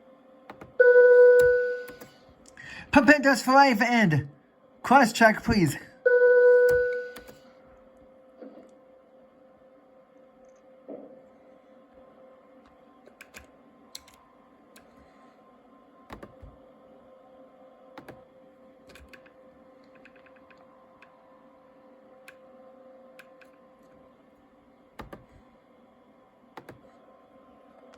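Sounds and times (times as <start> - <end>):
steady electrical hum: 0.0 - 27.9
keypad clicks: 0.5 - 0.8, 1.4 - 2.2, 6.7 - 7.4, 13.1 - 14.2, 16.1 - 16.6, 18.0 - 18.2, 18.9 - 19.3, 25.0 - 25.3, 26.6 - 26.9
switches and buttons clicking: 0.5 - 2.2, 6.6 - 7.4, 26.6 - 26.9.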